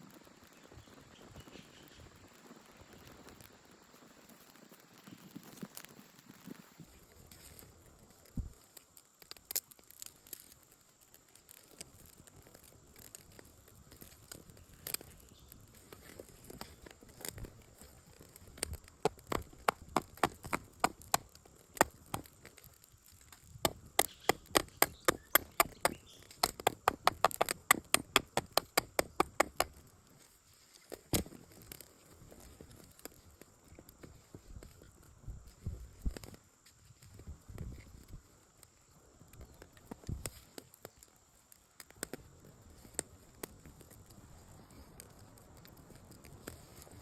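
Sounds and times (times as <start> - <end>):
sharp evenly spaced knocks: 19.0 - 22.3, 23.7 - 29.7.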